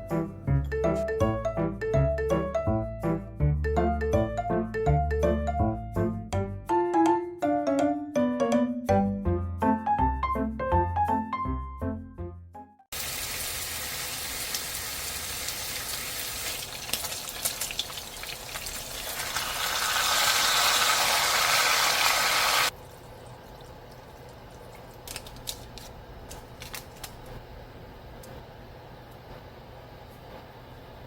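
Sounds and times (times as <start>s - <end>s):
food sizzling in a hot pan: 13.0s - 22.7s.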